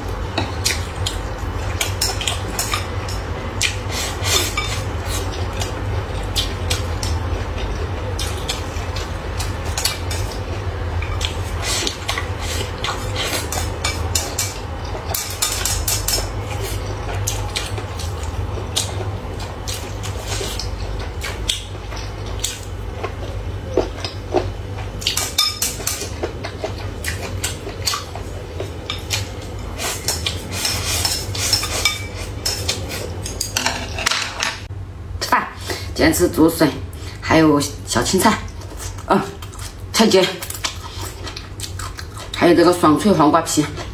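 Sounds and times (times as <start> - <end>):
steady low hum: 0.0 - 43.9
utensils clinking against dishes: 0.4 - 19.0, 23.7 - 34.7.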